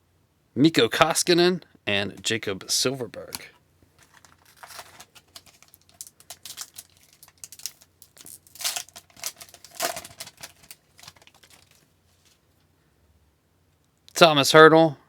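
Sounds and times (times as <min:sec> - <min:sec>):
trading cards clicking and rustling: 0:03.2 - 0:12.4
foil wrapper crinkling: 0:03.2 - 0:12.5.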